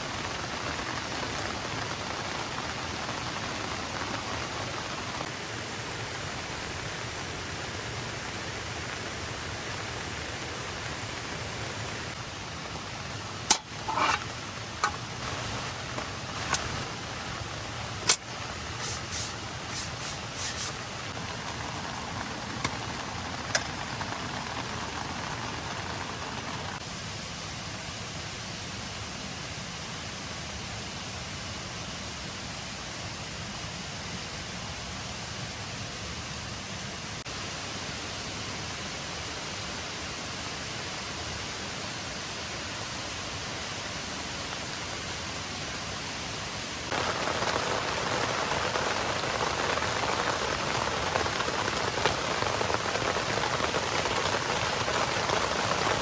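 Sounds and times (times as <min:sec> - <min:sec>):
rain and waterfall rushing: 0:00.0 - 0:56.0
camping gear clicks and knocks: 0:13.5 - 0:16.9.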